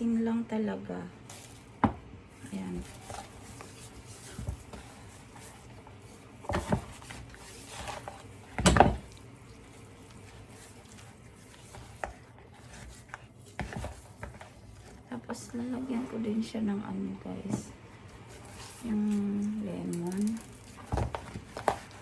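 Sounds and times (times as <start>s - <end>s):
rustles and knocks: 2.6s - 15.0s
hands rubbing salt on chicken: 9.1s - 14.9s.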